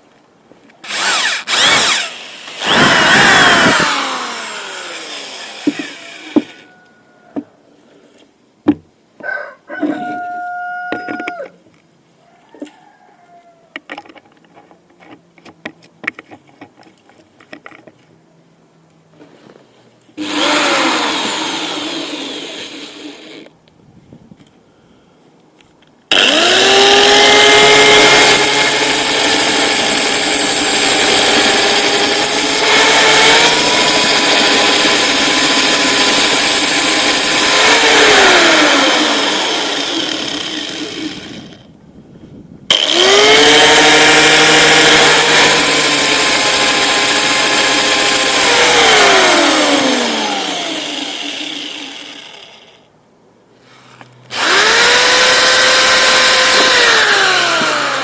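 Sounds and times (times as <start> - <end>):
power tool motor whining: 0.8 - 6.6, 20.2 - 23.5, 26.1 - 41.7, 42.7 - 52.8, 54.2 - 58.0.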